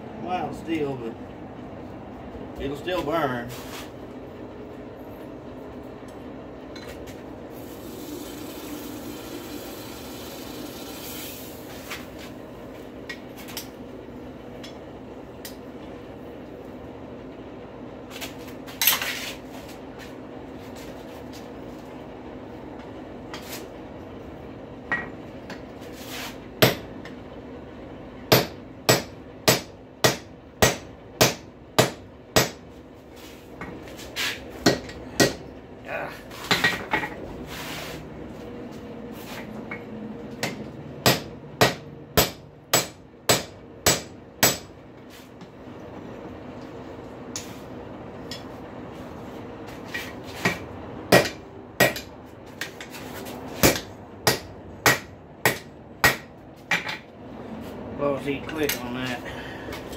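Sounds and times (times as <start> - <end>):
steady hum: 0.0 - 59.9
hammer striking metal on anvil: 28.3 - 32.6, 34.6 - 35.4, 40.4 - 44.7, 51.1 - 52.1, 53.6 - 57.0.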